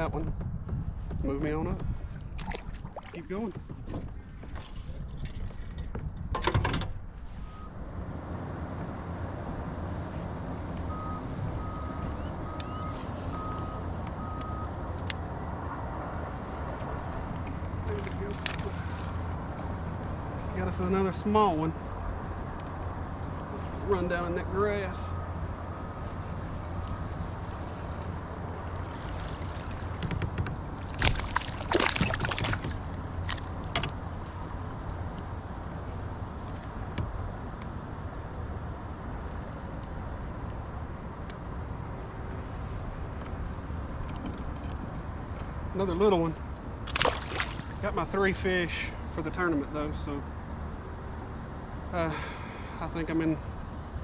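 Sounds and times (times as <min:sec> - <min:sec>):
water splashing: 0:02.0 - 0:03.6, 0:28.5 - 0:30.1, 0:30.7 - 0:33.7, 0:46.8 - 0:48.0.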